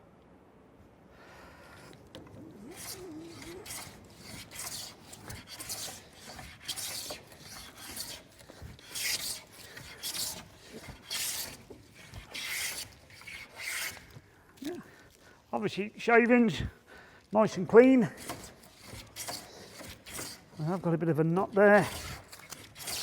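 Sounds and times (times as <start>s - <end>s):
hand plane rasping on wood: 1.8s - 14.2s, 18.1s - 23.0s.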